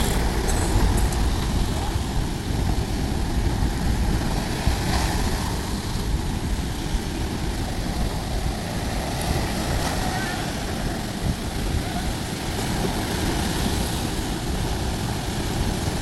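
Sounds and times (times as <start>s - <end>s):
surf washing onto beach: 0.0s - 16.0s
wind rumble on microphone: 0.0s - 16.0s.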